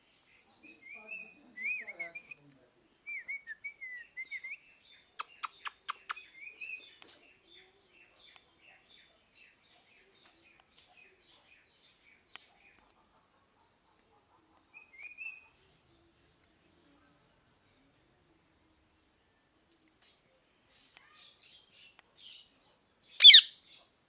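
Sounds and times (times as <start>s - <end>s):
parrot chirping: 23.2s - 23.5s.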